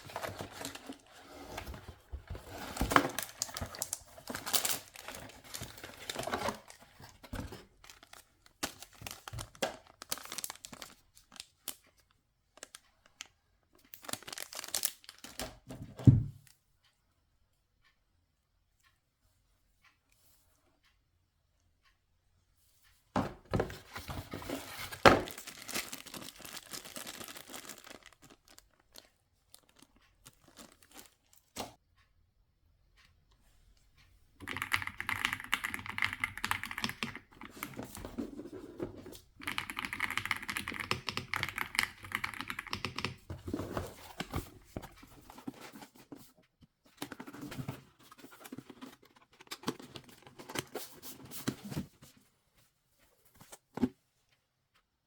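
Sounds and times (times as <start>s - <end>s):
mechanical keyboard clicking: 34.4s - 38.0s, 39.4s - 43.3s.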